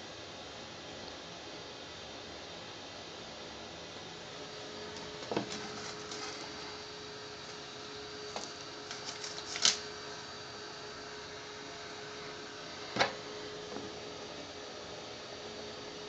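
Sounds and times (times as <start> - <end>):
faint hum: 0.0 - 16.0.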